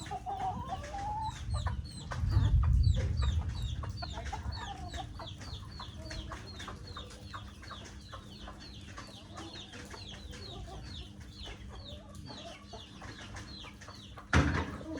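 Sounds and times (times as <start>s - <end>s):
chickens clucking: 0.0s - 14.9s
chicks peeping: 0.0s - 14.9s
steady low rumble: 1.2s - 6.2s.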